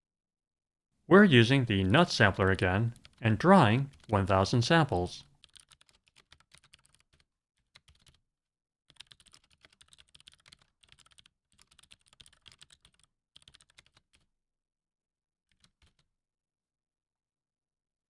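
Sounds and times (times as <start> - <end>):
keyboard typing: 1.2 - 7.2, 8.9 - 14.0.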